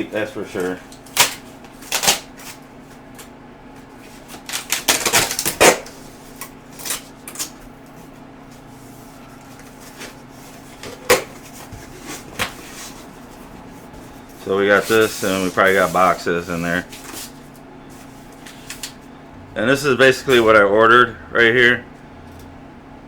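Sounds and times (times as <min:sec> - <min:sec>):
faint steady hum: 0:00.0 - 0:23.0
packaging rustling and bumping: 0:04.1 - 0:07.6.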